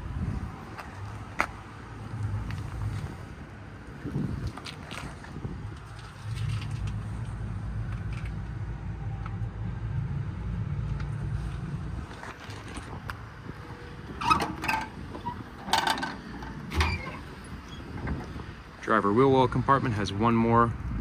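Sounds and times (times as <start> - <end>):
vehicle rumble: 0.0 - 21.0
metal latch clunks and clicks: 13.1 - 18.4.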